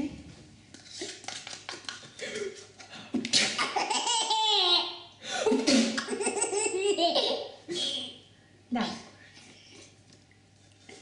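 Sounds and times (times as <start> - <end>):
baby laughing: 3.6 - 5.0, 5.6 - 7.6.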